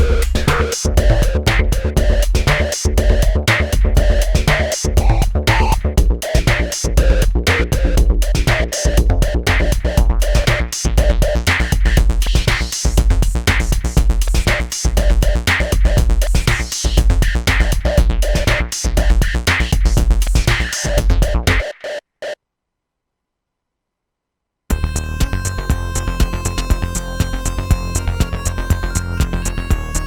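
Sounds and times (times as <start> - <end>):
repeating bass and synth pattern: 0.0 - 22.0, 24.7 - 30.0
programmed drum beat: 0.0 - 22.4.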